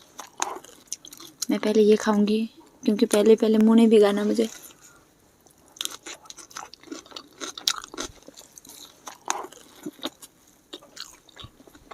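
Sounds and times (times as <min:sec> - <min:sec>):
crunchy chewing: 0:00.0 - 0:01.5, 0:04.5 - 0:11.9.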